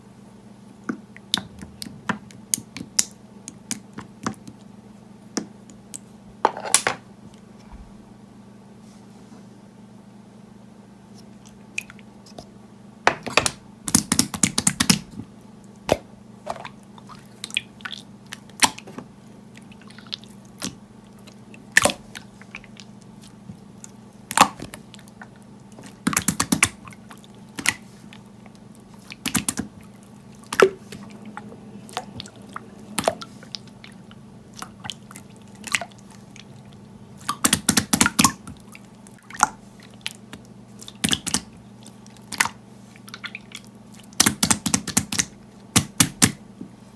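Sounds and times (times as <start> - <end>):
steady low hum: 0.0 - 44.2
slime clicking and popping: 13.4 - 15.1, 26.0 - 26.8, 29.1 - 29.7, 37.2 - 38.6, 40.8 - 41.5, 44.2 - 46.4.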